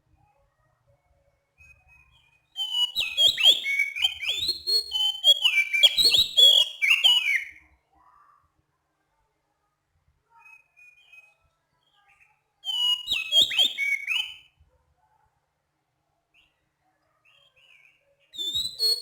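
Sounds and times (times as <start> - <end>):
bird singing whistled phrases: 1.9 - 7.7, 12.6 - 14.5, 18.4 - 19.0.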